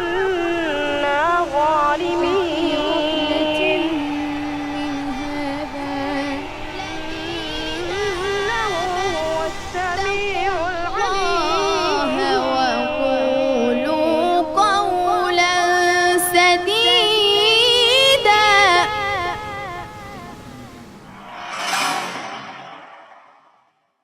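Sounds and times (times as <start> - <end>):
layered vocal lines: 0.0 - 23.2.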